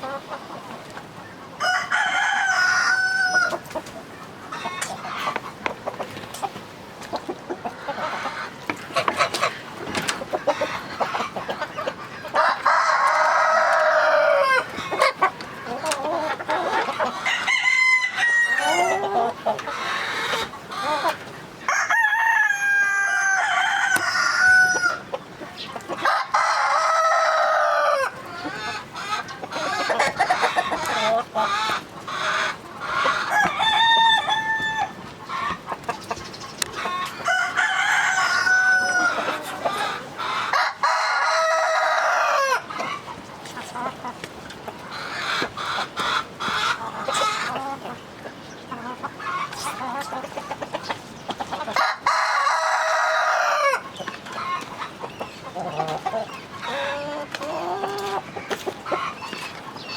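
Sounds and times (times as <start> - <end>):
hens clucking: 0.0 - 59.9
roosters crowing: 1.6 - 3.8, 12.2 - 25.1, 25.9 - 35.6, 36.7 - 43.1, 51.6 - 59.2.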